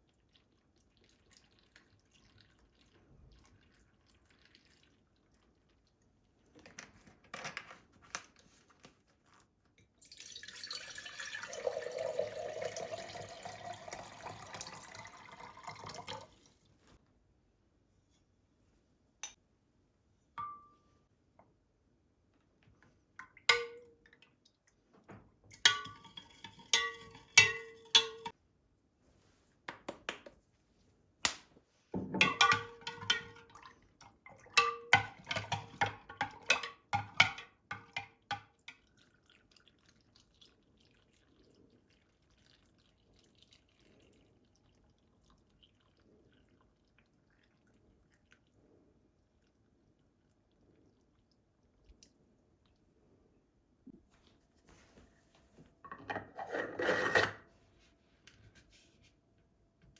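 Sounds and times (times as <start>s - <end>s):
kitchenware clinking and knocking: 25.5s - 28.3s, 32.0s - 33.6s, 34.5s - 38.5s, 55.8s - 57.5s.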